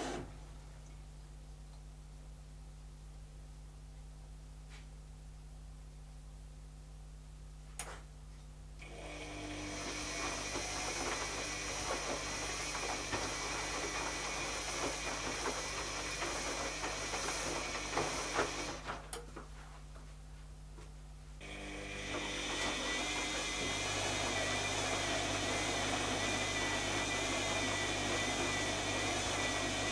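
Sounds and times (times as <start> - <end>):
washing machine drum swishing: 9.6 - 19.8, 21.8 - 29.9.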